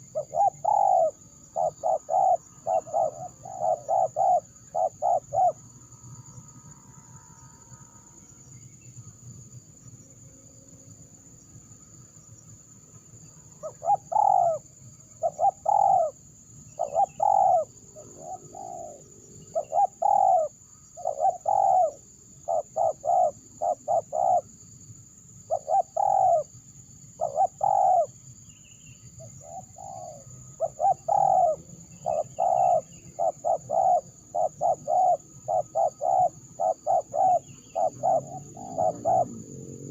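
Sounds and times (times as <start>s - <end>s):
dove cooing: 0.0s - 5.6s, 13.6s - 14.6s, 15.2s - 16.2s, 16.8s - 24.5s, 25.5s - 26.4s, 27.2s - 28.2s, 29.2s - 39.9s.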